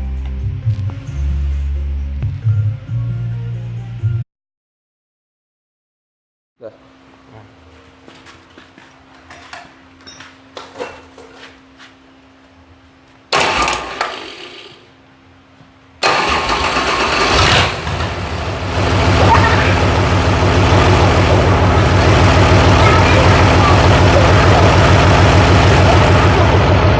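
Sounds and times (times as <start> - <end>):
diesel engine starting and running: 13.3 - 15.0, 16.0 - 26.9.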